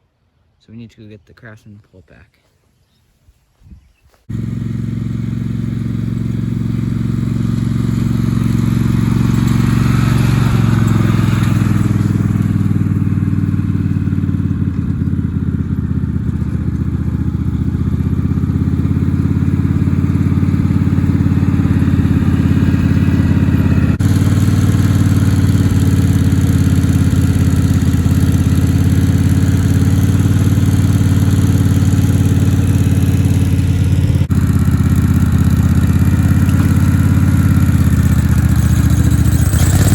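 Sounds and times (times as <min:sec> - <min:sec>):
lawn mower engine running: 0:04.3 - 0:39.9.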